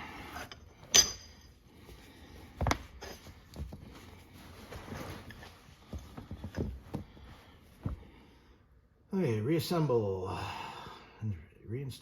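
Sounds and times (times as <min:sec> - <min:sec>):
metal parts clinking and knocking: 0:00.4 - 0:01.6.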